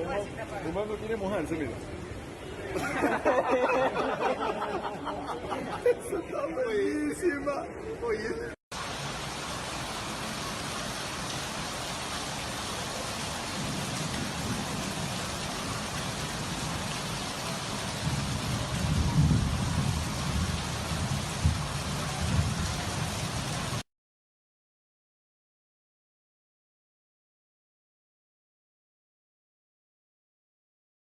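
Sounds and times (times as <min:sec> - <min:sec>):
heavy rain pouring: 0:08.7 - 0:23.8.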